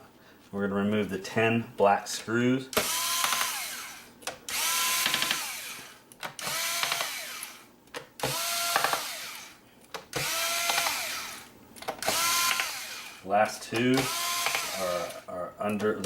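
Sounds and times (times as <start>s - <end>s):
electric screwdriver whining: 2.8s - 7.6s, 8.2s - 13.2s, 14.0s - 15.2s.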